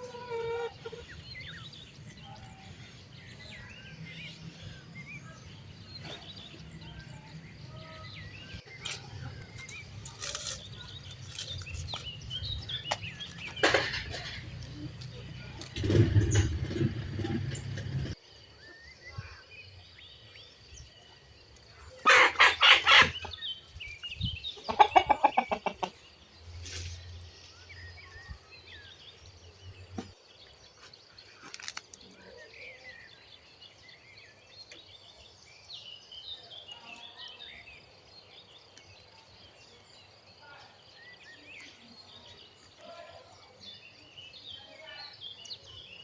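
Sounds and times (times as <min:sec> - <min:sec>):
chickens clucking: 0:00.0 - 0:01.2, 0:08.7 - 0:18.2, 0:22.1 - 0:23.4, 0:24.5 - 0:26.1.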